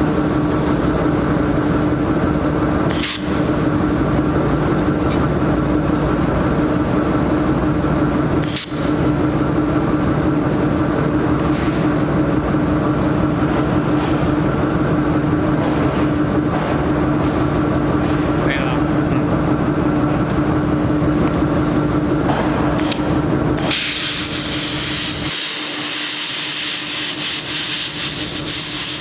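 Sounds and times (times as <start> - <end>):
machinery humming: 0.0 - 29.0.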